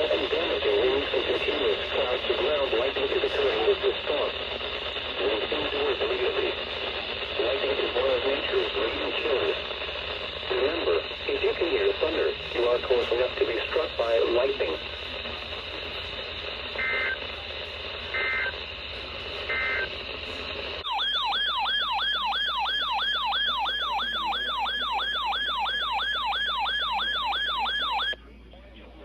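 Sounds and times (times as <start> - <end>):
two-tone data bursts: 10.2 - 17.4, 18.0 - 20.0
siren-like alert tone: 20.8 - 28.2.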